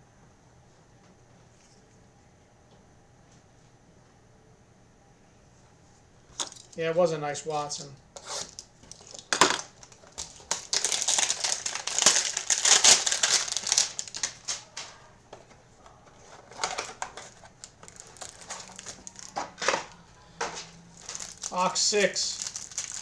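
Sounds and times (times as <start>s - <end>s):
card packaging crinkling and tearing: 7.5s - 15.0s, 15.9s - 23.0s.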